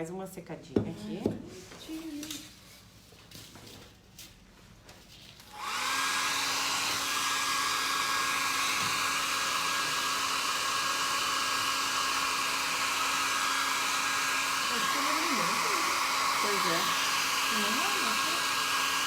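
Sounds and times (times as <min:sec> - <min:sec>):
hair dryer blowing: 0:05.5 - 0:19.0.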